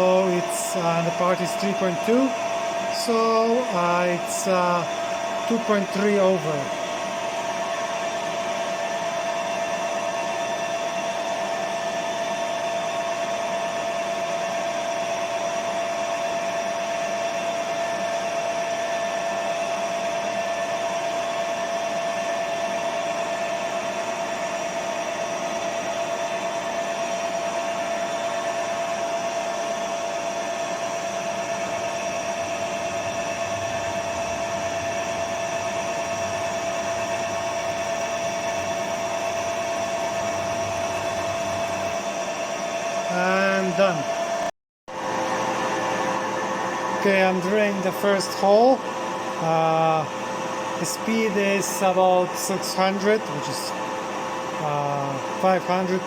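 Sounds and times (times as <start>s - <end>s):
milling machine motor whine: 0.0s - 44.3s.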